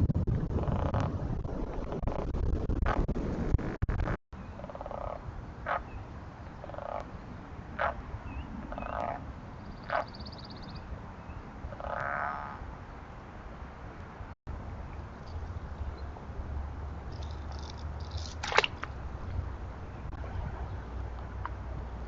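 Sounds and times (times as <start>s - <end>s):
steady low rumble: 0.0s - 9.8s
wind noise: 0.0s - 22.0s
frogs croaking: 4.5s - 7.2s, 7.8s - 10.8s, 11.7s - 12.7s, 17.1s - 18.3s.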